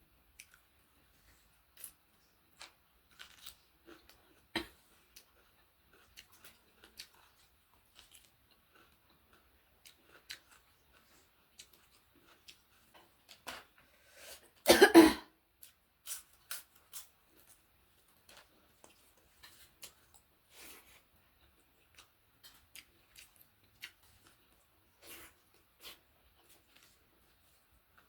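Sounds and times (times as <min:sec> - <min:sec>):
person coughing: 0:04.6 - 0:04.8, 0:14.7 - 0:15.3
chewing clicks and smacks: 0:05.2 - 0:13.7, 0:21.4 - 0:24.7.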